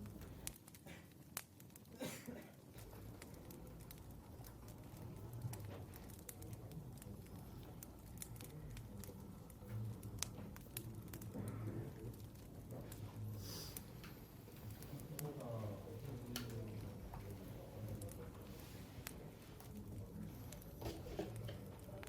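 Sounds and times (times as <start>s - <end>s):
light scattered clicks and taps: 16.1s - 18.2s.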